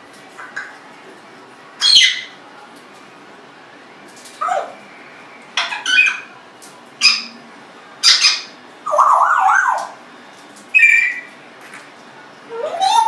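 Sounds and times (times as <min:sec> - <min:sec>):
parrot squawks and whistles: 0:01.8 - 0:02.4, 0:08.0 - 0:10.0, 0:10.7 - 0:11.3, 0:12.5 - 0:13.0.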